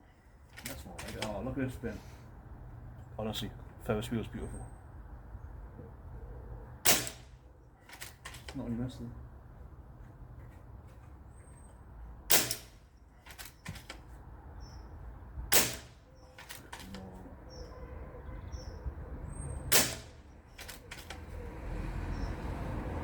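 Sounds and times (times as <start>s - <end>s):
air rifle shots: 6.8s - 8.5s, 12.3s - 14.0s, 15.5s - 16.9s, 19.7s - 21.2s.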